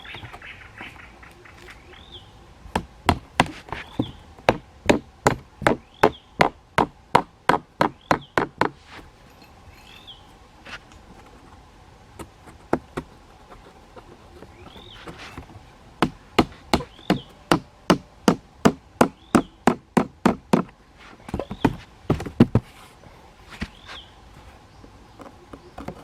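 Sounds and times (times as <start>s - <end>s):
bird chirping: 0.0s - 2.7s, 3.6s - 4.4s, 5.4s - 6.4s, 7.8s - 8.5s, 9.2s - 10.4s, 14.0s - 18.3s, 19.0s - 19.8s, 21.1s - 21.9s, 23.0s - 26.0s
tool striking wood: 2.7s - 8.8s, 14.7s - 22.6s.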